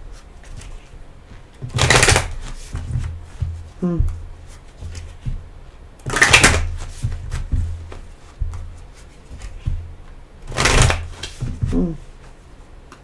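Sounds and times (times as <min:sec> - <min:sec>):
low steady hum: 0:00.0 - 0:13.0
card shuffling: 0:00.4 - 0:05.4, 0:06.1 - 0:09.8, 0:10.4 - 0:12.4.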